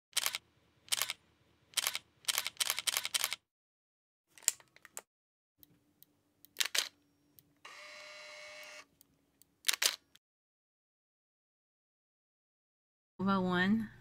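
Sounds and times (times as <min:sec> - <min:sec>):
camera shutter clicks: 0:00.2 - 0:01.2, 0:01.8 - 0:03.4, 0:06.6 - 0:07.0, 0:09.7 - 0:10.0
film camera advance strokes: 0:07.7 - 0:08.9.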